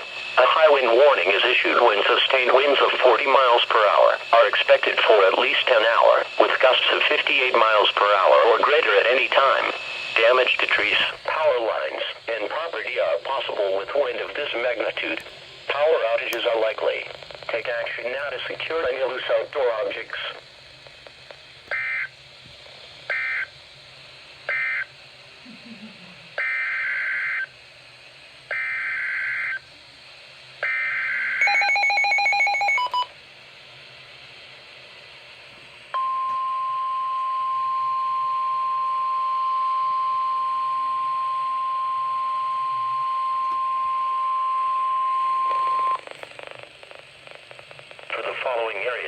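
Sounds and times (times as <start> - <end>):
steady warning alarm tone: 21.7 - 22.2, 23.1 - 23.5, 24.5 - 24.9, 26.4 - 27.6, 28.5 - 29.6, 30.6 - 33.1, 35.9 - 46.5.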